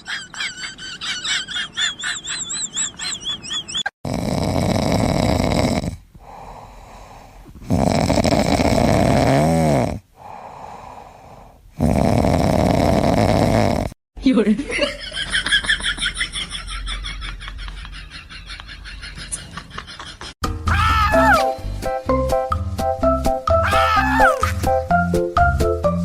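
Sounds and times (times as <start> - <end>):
animal snoring: 4.0 - 10.8, 11.4 - 14.0.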